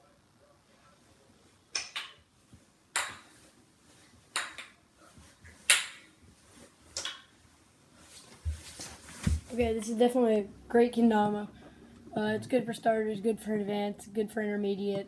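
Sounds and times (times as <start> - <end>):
wooden ball clacking in cups: 1.7 - 2.2, 2.9 - 3.3, 4.3 - 4.8, 7.0 - 7.3.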